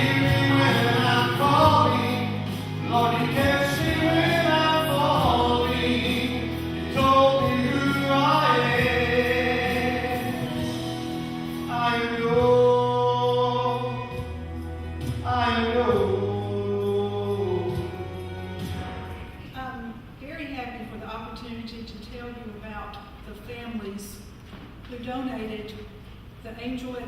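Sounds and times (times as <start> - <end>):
choir singing gospel: 0.0 - 19.3
instrumental accompaniment: 0.0 - 19.6.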